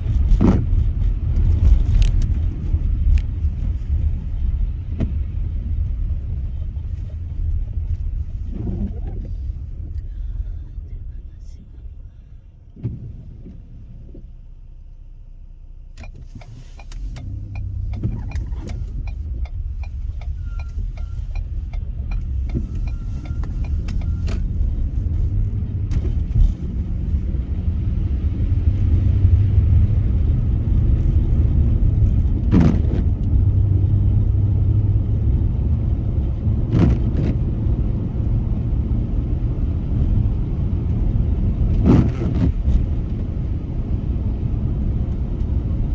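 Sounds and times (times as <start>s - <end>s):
road and engine rumble: 0.0s - 45.9s
car thumping over bumps: 12.7s - 14.3s, 32.3s - 33.6s, 36.5s - 37.6s, 41.6s - 43.4s.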